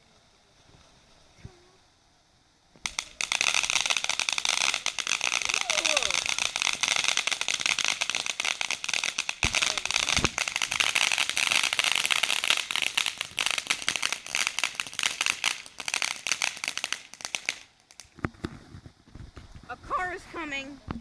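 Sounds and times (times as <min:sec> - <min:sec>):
firework crackling: 0:00.0 - 0:21.0
firework bangs: 0:02.8 - 0:21.0.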